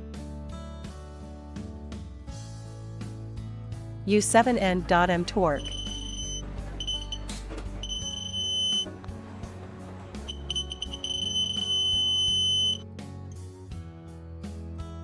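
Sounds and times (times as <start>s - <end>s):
background music: 2.2s - 15.0s
high electronic beeping: 5.6s - 8.9s, 10.3s - 12.8s.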